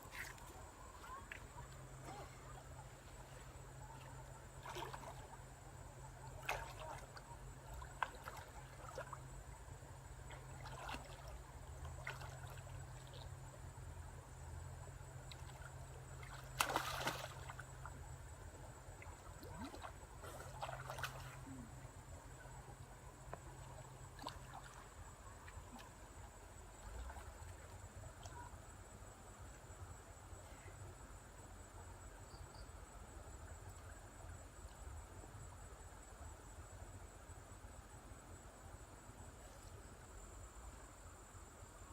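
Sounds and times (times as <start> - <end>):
water splashing and trickling: 0.0 - 13.6, 15.2 - 18.1, 18.8 - 21.8, 23.4 - 28.4
loud splash: 16.6 - 17.4.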